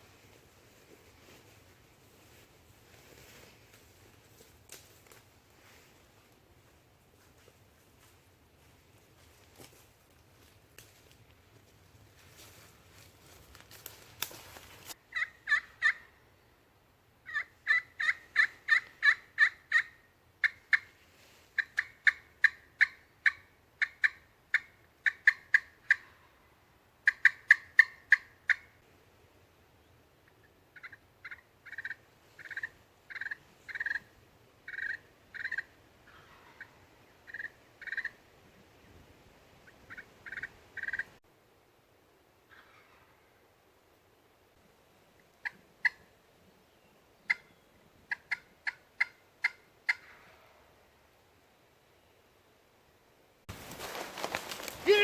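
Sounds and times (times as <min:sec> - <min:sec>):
handling rustle: 0:07.2 - 0:15.0, 0:53.5 - 0:55.0
turkey call yelps: 0:15.1 - 0:16.1, 0:17.3 - 0:20.8, 0:27.1 - 0:28.7, 0:34.7 - 0:38.2, 0:48.1 - 0:50.2.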